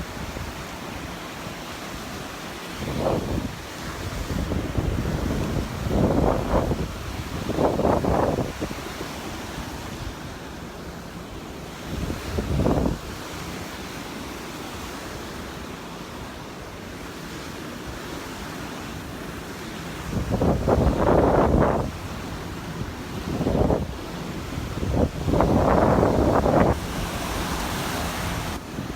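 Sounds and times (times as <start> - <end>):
surf washing on beach: 0.0 - 28.9
wind noise on microphone: 2.6 - 10.5, 11.7 - 13.8, 19.9 - 28.9.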